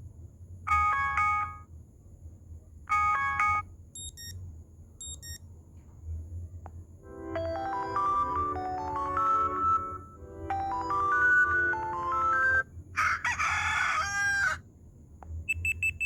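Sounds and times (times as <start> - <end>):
low steady hum: 6.0 - 12.9
chiming chord: 7.0 - 12.6
melodic ringtone: 7.1 - 12.7.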